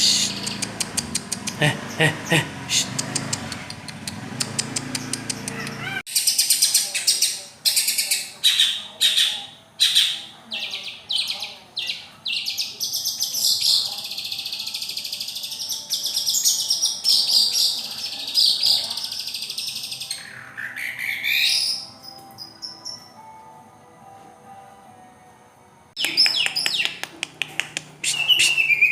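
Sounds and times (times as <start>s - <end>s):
bird singing sharp high notes: 28.0s - 28.9s.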